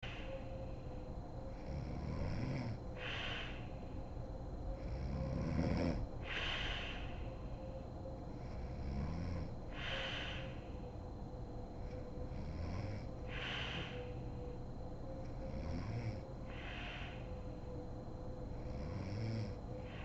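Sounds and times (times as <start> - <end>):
woman snoring: 1.5 - 2.8, 4.8 - 6.0, 8.4 - 10.4, 12.3 - 13.9, 15.5 - 16.2, 18.6 - 19.6.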